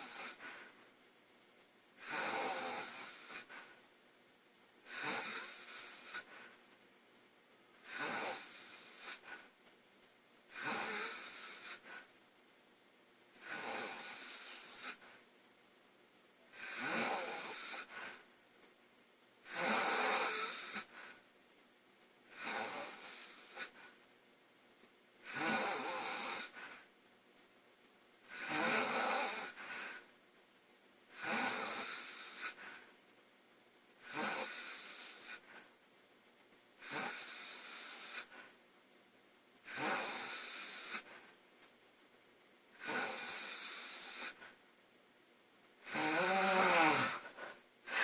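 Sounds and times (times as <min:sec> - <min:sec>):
woman snoring: 0:00.0 - 0:00.7, 0:02.0 - 0:03.7, 0:04.8 - 0:06.4, 0:07.8 - 0:09.4, 0:10.5 - 0:12.1, 0:13.4 - 0:15.1, 0:16.5 - 0:18.2, 0:19.4 - 0:21.2, 0:22.3 - 0:23.9, 0:25.2 - 0:26.8, 0:28.3 - 0:30.0, 0:31.1 - 0:32.8, 0:34.0 - 0:35.6, 0:36.8 - 0:38.4, 0:39.6 - 0:41.2, 0:42.8 - 0:44.5, 0:45.8 - 0:48.0.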